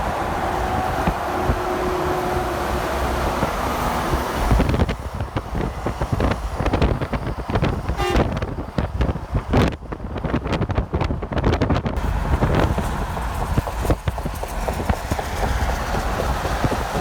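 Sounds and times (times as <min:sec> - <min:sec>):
car horn toot: 0:00.0 - 0:04.2, 0:07.9 - 0:08.5
highway traffic passing: 0:00.0 - 0:17.0
wind buffeting microphone: 0:00.0 - 0:17.0.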